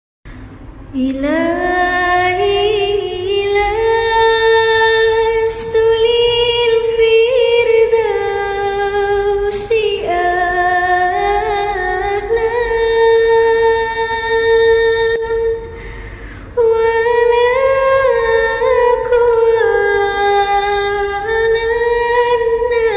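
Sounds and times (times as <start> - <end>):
quick breaths: 15.8 - 16.5.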